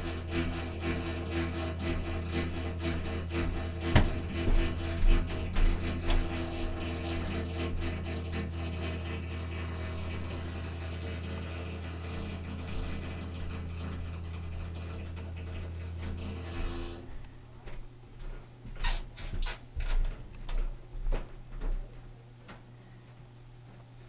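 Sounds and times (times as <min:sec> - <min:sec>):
fast mechanical rattle: 0:00.0 - 0:17.1
water heater humming: 0:00.0 - 0:24.0.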